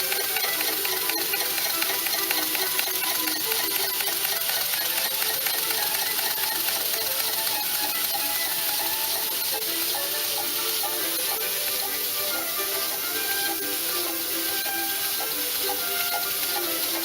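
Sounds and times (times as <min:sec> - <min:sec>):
background music: 0:00.0 - 0:17.0
model engine mechanical clatter: 0:00.0 - 0:17.0.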